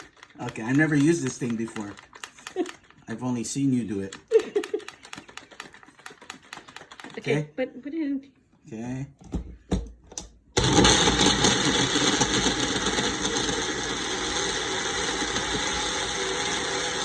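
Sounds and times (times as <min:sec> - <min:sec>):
blender motor running: 0:10.6 - 0:17.0.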